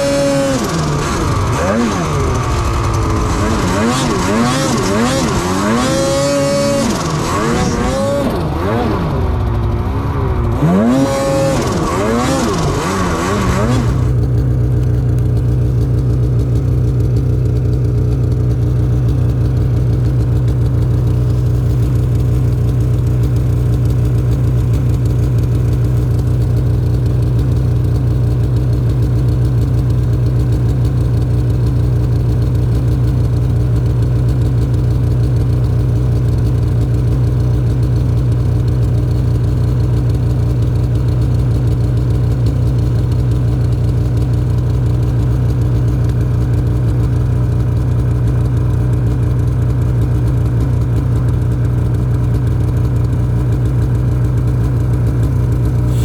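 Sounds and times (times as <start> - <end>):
snowmobile engine revving: 0.0 - 24.1, 55.7 - 56.0.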